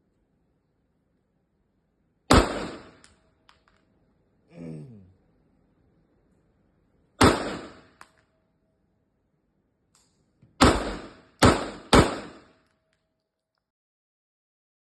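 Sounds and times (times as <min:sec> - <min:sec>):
gunshots with echo: 0:02.3 - 0:03.0, 0:07.2 - 0:08.0, 0:10.6 - 0:12.5.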